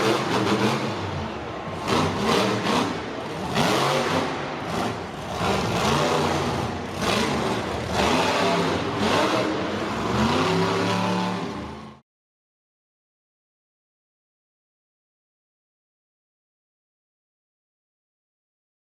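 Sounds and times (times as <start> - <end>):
monster truck engine revving: 0.0 - 12.0.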